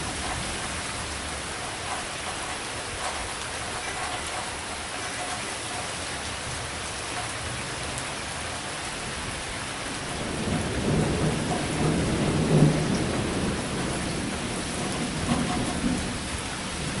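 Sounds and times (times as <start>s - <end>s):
heavy rain falling: 0.0s - 17.0s
thunder rumble: 9.9s - 17.0s.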